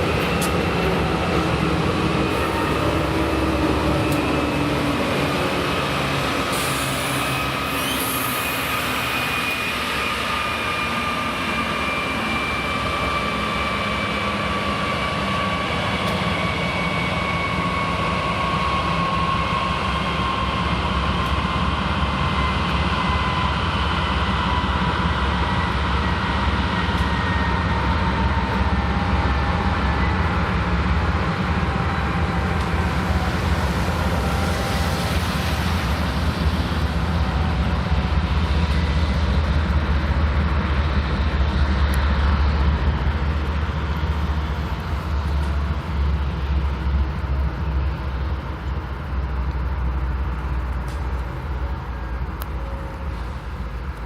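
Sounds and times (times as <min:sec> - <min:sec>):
deep diesel engine rumble: 0:27.8 - 0:54.0.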